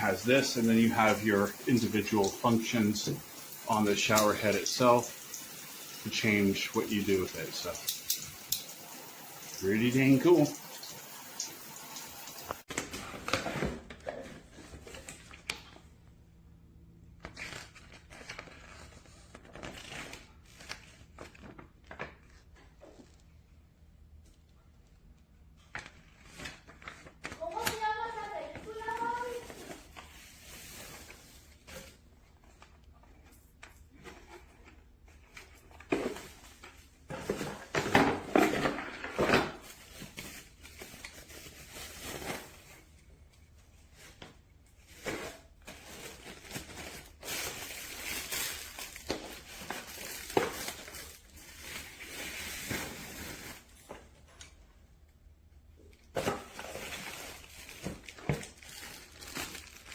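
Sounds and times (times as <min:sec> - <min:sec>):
rustling and crinkling: 0:17.2 - 0:55.1, 0:55.8 - 0:59.9.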